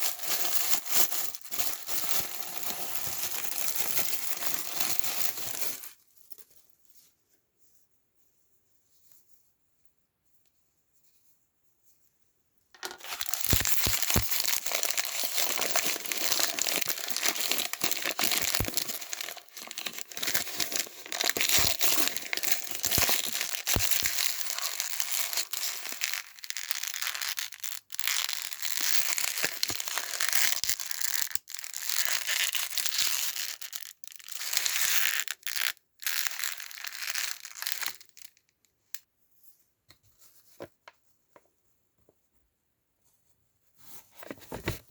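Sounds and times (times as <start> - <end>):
plastic packaging crumpled and torn: 0.0 - 6.0, 12.8 - 38.4.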